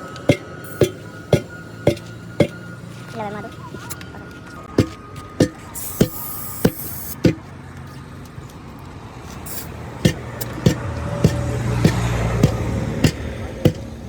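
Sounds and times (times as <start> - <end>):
hammer blows with metallic ring: 0.0 - 2.9, 4.7 - 7.5, 9.5 - 14.0.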